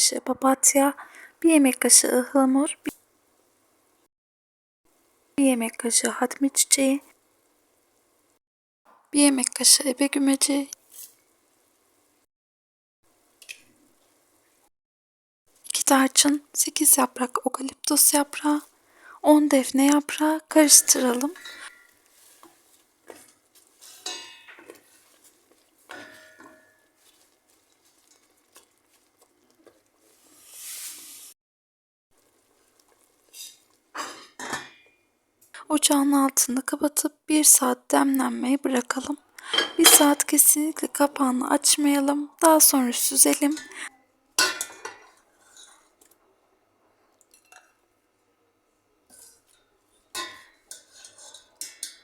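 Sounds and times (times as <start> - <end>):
spoon clinking against pot: 23.9 - 25.0, 25.9 - 27.3, 39.4 - 40.2, 44.4 - 45.8, 47.3 - 47.8, 49.1 - 52.0.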